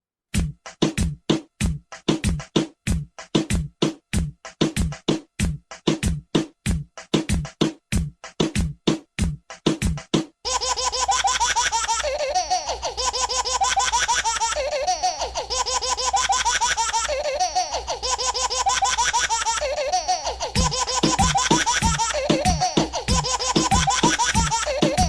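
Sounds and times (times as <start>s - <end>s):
young children laughing: 10.5s - 25.0s.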